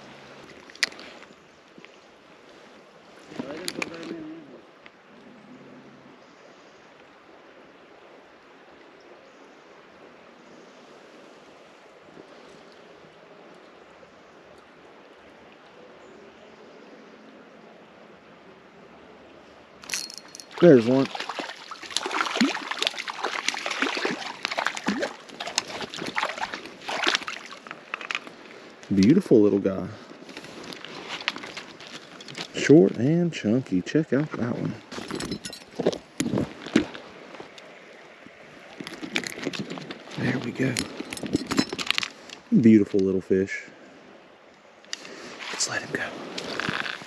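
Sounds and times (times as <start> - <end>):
creek water flowing: 0.0 - 47.0
plops and drips: 20.1 - 28.2.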